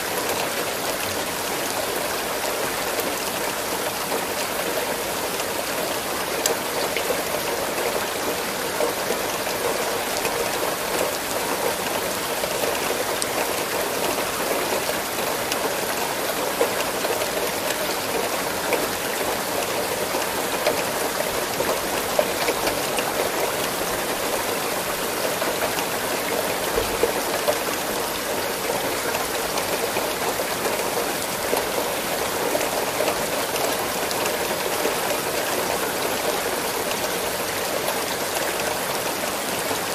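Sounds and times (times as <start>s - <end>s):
steady rain hiss: 0.0s - 39.9s
raindrop ticks: 28.6s - 37.6s.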